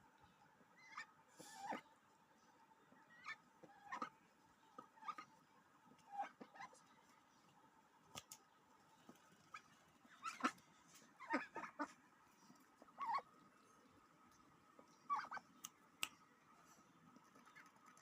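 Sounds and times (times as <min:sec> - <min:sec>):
duck making soft calls: 0:00.8 - 0:01.9, 0:04.8 - 0:05.4, 0:09.5 - 0:12.0, 0:12.8 - 0:13.3, 0:15.0 - 0:15.6.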